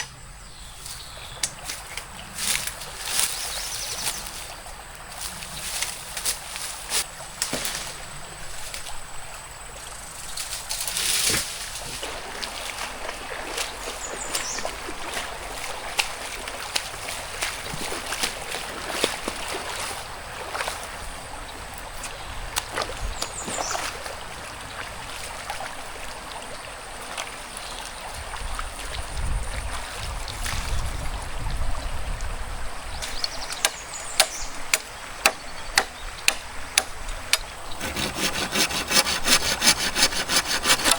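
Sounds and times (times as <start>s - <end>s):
forest stream flowing: 11.7s - 32.9s, 37.6s - 40.9s
sharp evenly spaced strokes: 37.8s - 40.9s.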